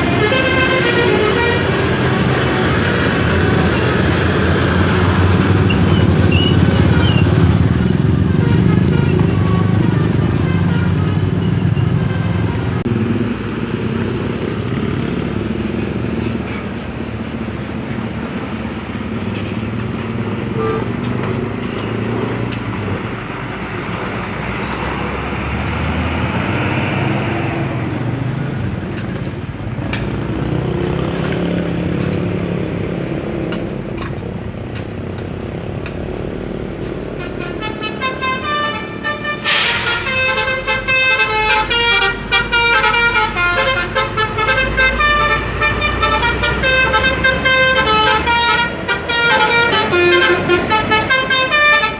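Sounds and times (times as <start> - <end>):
multi-tone horn tooting: 0.0 - 4.1, 5.7 - 12.7, 20.5 - 21.0, 37.1 - 51.9
bus engine running: 0.0 - 30.9.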